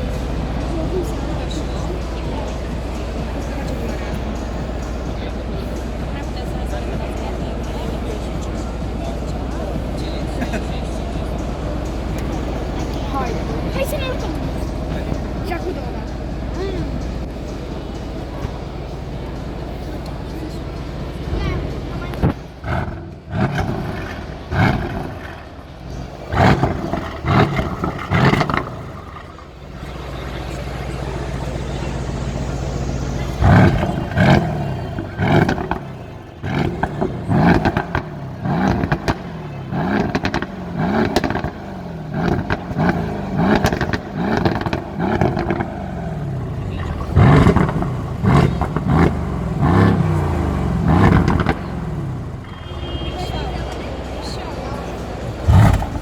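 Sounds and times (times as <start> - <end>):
car engine revving from idle: 0.0 - 56.0
exhaust crackles and pops: 17.0 - 54.4, 55.1 - 56.0.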